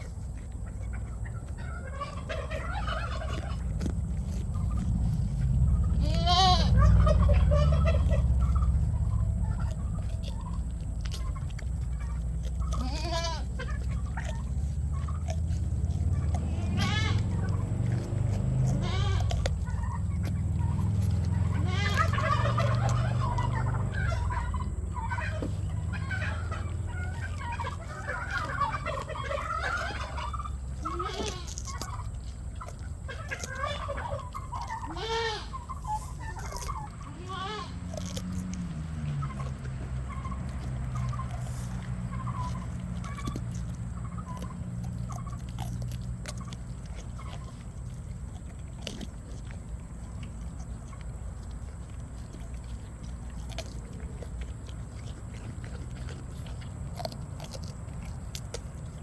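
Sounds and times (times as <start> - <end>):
goat crunching carrots: 0.0 - 59.0
steady low hum: 0.0 - 59.0
fowl warbling calls: 0.7 - 10.5, 11.1 - 38.2, 39.0 - 45.5.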